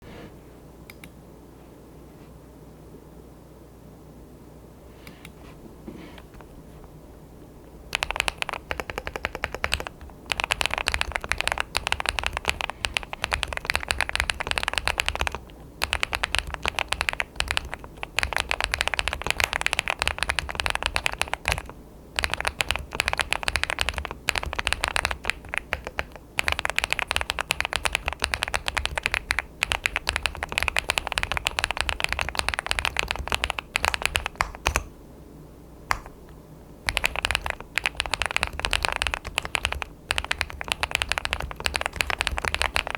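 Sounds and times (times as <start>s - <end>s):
mechanical keyboard typing: 7.9s - 34.9s, 36.8s - 42.9s.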